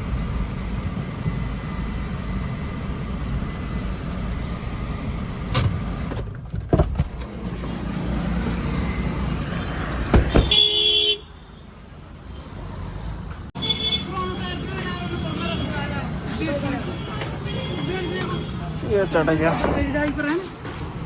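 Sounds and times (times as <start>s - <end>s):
motor vehicle rumble: 0.0s - 21.0s
car horn honk: 9.7s - 11.6s, 13.6s - 19.3s.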